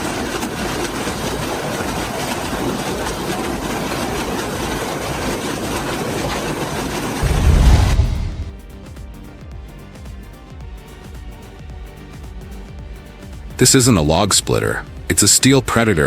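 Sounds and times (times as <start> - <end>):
wood chipper grinding: 0.0 - 8.5
deep low boom: 7.2 - 8.6.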